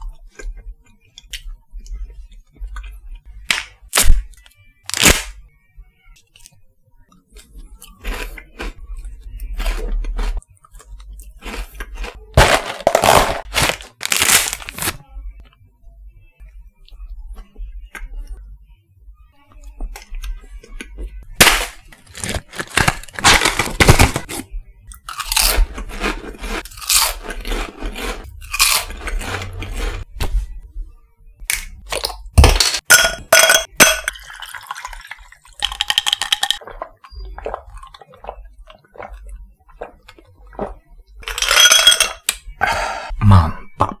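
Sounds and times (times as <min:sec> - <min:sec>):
crunchy food chewing: 0:06.3 - 0:15.0, 0:21.8 - 0:30.1, 0:34.4 - 0:41.3.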